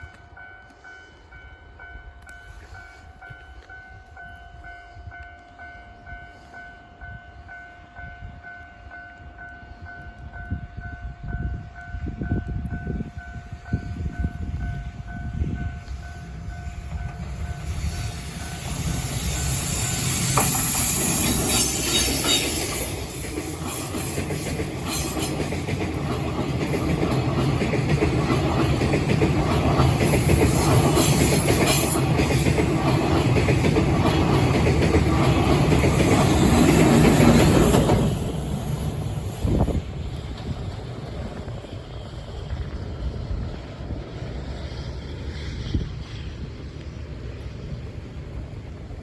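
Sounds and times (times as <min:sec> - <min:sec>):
freight train rumble: 0:00.0 - 0:49.0
train wheels clattering: 0:16.8 - 0:42.0.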